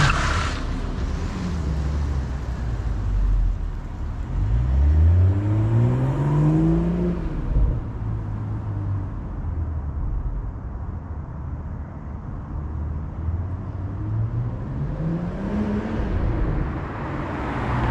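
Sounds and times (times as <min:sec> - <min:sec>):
car engine accelerating: 0:00.0 - 0:08.3.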